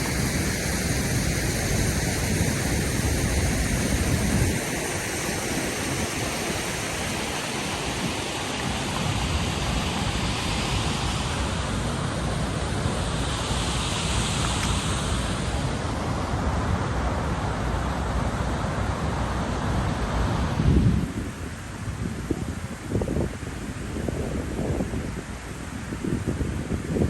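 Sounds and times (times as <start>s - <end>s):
wind buffeting microphone: 0.0s - 13.0s, 18.9s - 27.0s
waterfall rushing water: 0.0s - 27.0s.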